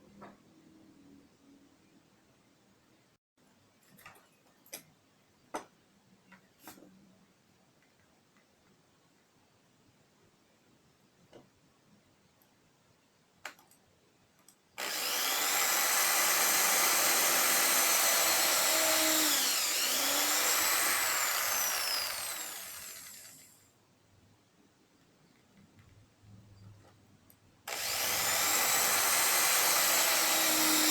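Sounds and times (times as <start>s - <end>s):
hand drill spinning saw blade: 14.8s - 23.6s, 27.7s - 30.9s.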